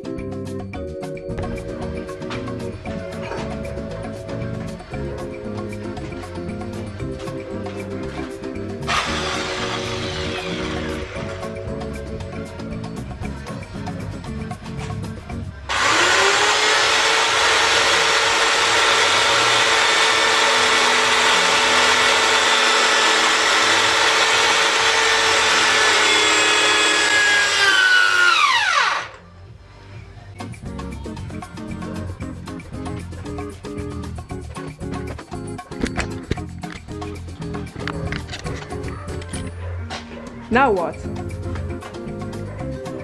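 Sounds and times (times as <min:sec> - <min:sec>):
background music with steady rhythm: 0:00.0 - 0:15.7, 0:28.5 - 0:43.0
electric drill running: 0:08.8 - 0:11.6, 0:15.7 - 0:29.3.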